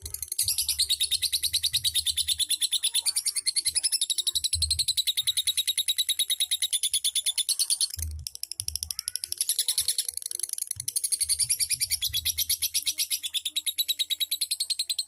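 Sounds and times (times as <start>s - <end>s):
lovebird rattling chatter: 5.1s - 13.2s.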